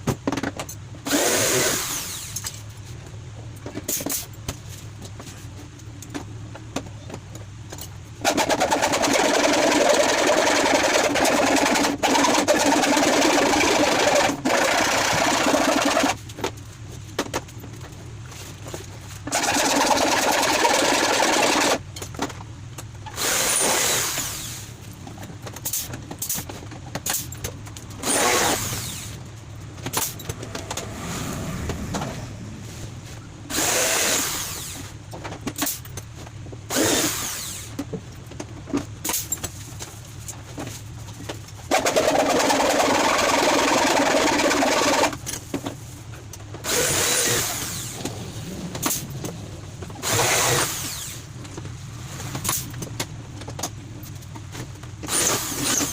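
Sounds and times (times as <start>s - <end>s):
power drill running: 23.2s - 24.6s, 28.0s - 29.2s, 33.5s - 34.8s, 36.7s - 37.7s, 46.6s - 48.1s, 50.0s - 51.2s, 55.1s - 55.9s.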